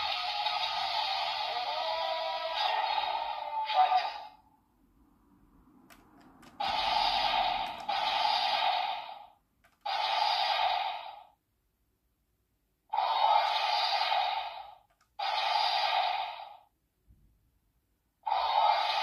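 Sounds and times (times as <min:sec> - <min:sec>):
toy speaker hissing sound effect: 0:00.0 - 0:04.4, 0:06.5 - 0:11.4, 0:12.9 - 0:16.7, 0:18.2 - 0:19.0.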